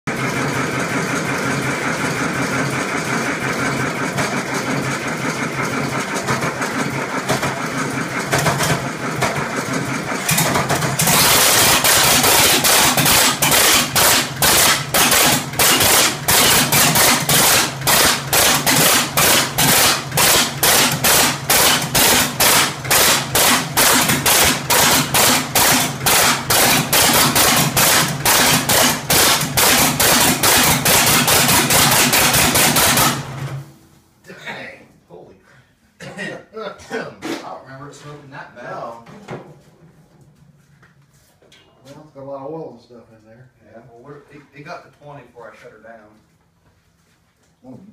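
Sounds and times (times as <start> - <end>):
diesel engine running with knock: 0.1 - 33.7
tractor engine starting: 0.1 - 33.8.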